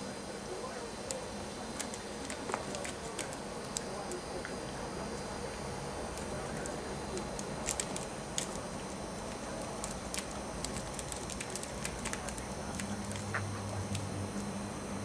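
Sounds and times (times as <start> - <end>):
low steady hum: 0.0 - 15.0
budgerigar chattering: 13.0 - 13.9.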